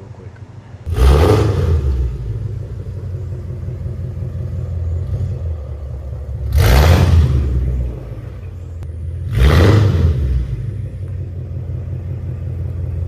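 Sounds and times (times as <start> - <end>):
car engine idling and revving: 0.8 - 13.0.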